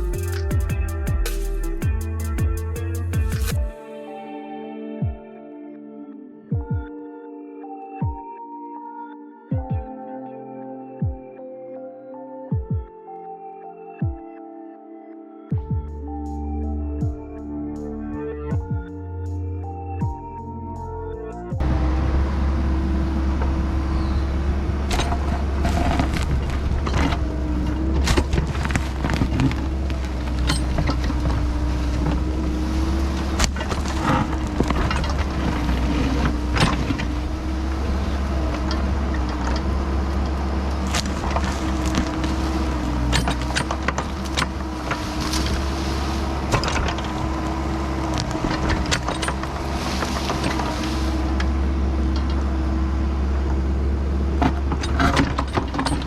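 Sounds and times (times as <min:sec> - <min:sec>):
excavator diesel engine running: 0:21.6 - 0:56.0
bucket clanking on dirt and rock: 0:23.4 - 0:52.5, 0:54.4 - 0:56.0.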